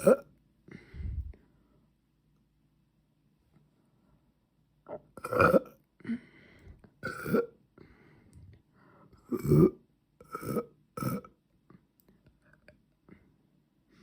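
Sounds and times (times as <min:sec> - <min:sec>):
quiet breaths: 0:00.6 - 0:02.1, 0:06.0 - 0:07.0, 0:07.7 - 0:09.3, 0:11.6 - 0:14.0
woman belching loudly: 0:09.3 - 0:11.3.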